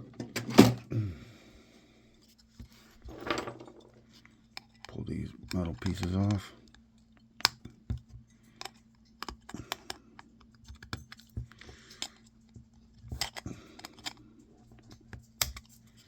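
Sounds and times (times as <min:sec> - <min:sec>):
small metal clicks and scrapes: 0:08.3 - 0:16.0.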